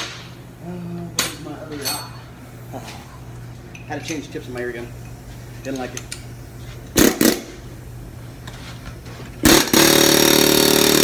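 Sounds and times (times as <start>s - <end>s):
pneumatic air hammer hammering metal: 7.0s - 7.6s, 9.4s - 11.0s.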